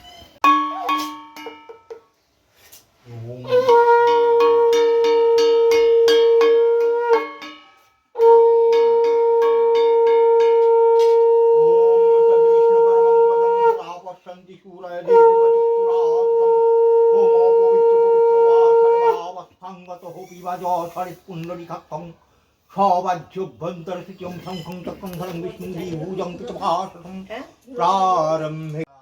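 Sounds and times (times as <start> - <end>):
conch shell blasts: 3.4 - 13.9, 15.0 - 19.3.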